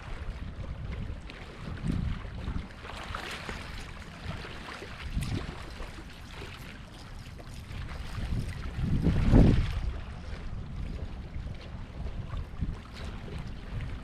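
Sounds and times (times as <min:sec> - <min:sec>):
wind gusting across microphone: 0:00.0 - 0:02.8, 0:04.1 - 0:05.8, 0:07.8 - 0:14.0
choppy water rushing: 0:00.0 - 0:14.0.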